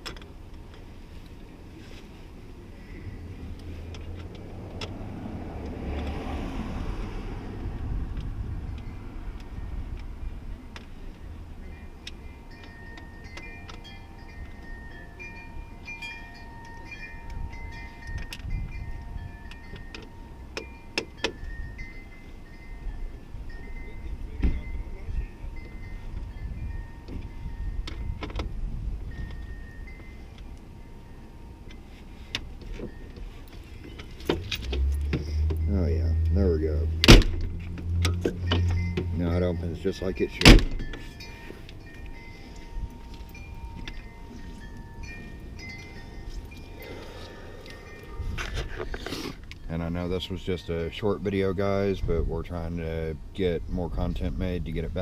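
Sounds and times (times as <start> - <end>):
wind chimes ringing: 2.4 - 3.9, 8.5 - 55.0
vehicle passing: 2.8 - 12.4, 29.6 - 51.7.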